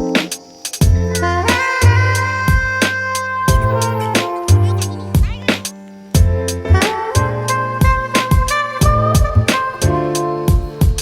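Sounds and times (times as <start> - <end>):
steady drum beat: 0.0 - 11.0
sustained melody notes: 1.1 - 5.7.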